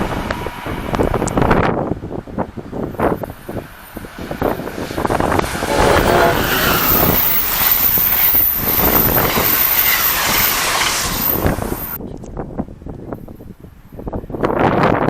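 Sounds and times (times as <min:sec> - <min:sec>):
train passing with rail noise: 0:00.0 - 0:12.0.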